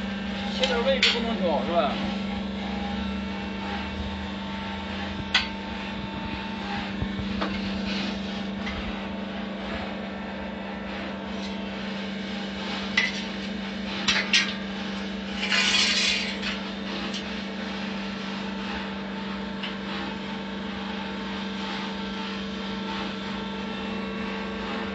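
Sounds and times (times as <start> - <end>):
cutting machine hum: 0.0 - 14.0.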